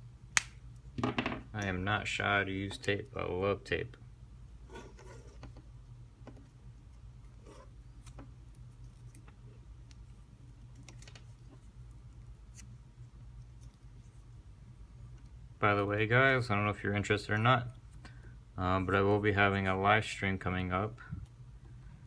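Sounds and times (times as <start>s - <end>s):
steady low hum: 0.0s - 22.0s.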